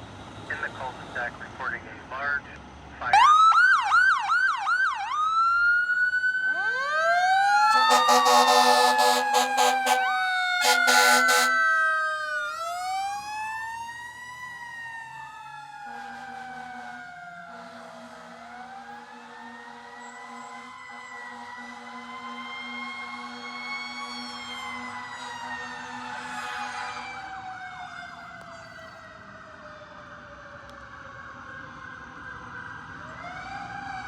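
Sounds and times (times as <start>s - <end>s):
electronic siren yelping and wailing: 3.1s - 14.6s
mechanical siren: 3.2s - 34.0s
air horn blasts: 7.7s - 11.7s.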